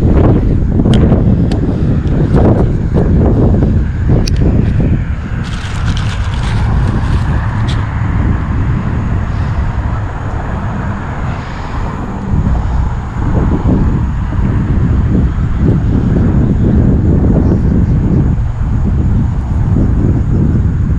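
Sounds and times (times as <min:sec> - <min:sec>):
wind buffeting microphone: 0:00.0 - 0:20.9.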